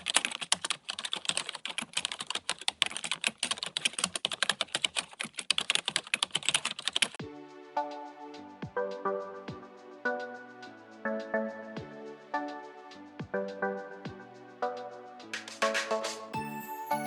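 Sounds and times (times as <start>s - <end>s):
rapid typing on a keyboard: 0.0s - 7.2s
soft music: 7.2s - 17.0s.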